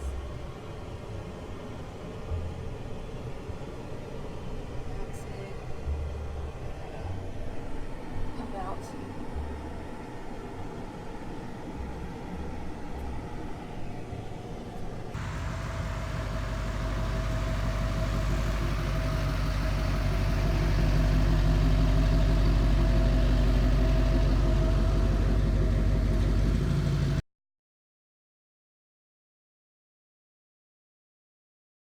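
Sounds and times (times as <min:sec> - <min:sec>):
vehicle engine and road rumble: 0:00.0 - 0:27.2.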